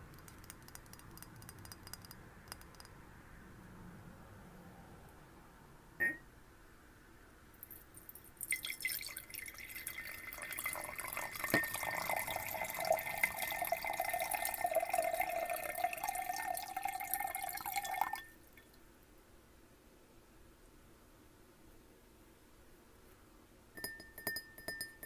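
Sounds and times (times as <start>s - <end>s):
water pouring into a glass: 7.6s - 18.8s.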